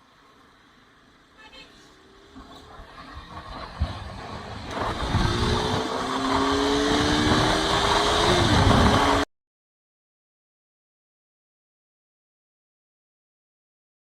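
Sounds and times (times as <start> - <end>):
motorcycle engine accelerating: 2.3 - 9.3
wind noise on microphone: 2.7 - 9.3.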